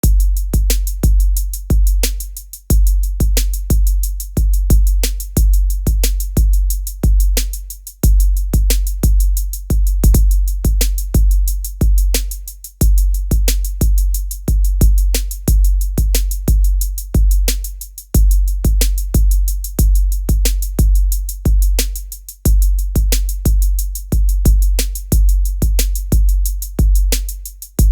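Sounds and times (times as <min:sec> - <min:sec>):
hi-hat ticks: 0:00.0 - 0:27.9.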